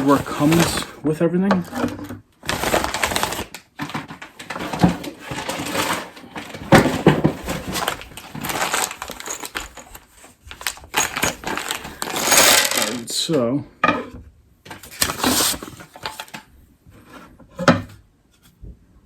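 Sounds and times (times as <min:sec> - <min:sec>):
packaging crinkling and rustling: 0:00.0 - 0:01.0, 0:01.8 - 0:13.0, 0:14.7 - 0:16.5.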